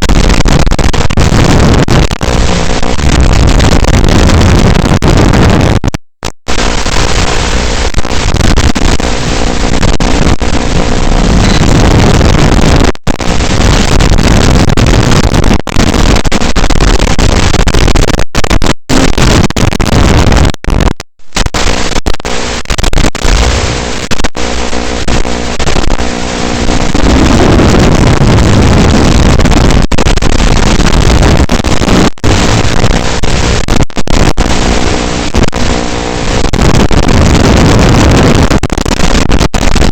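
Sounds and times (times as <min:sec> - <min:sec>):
faint hum: 0:00.7 - 0:18.2
loud steady hiss: 0:06.5 - 0:17.9.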